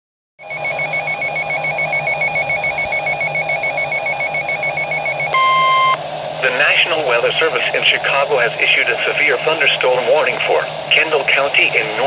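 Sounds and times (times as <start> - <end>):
buzzy warbling electronic tone: 0.4 - 6.8
steady alarm tone: 0.4 - 11.5.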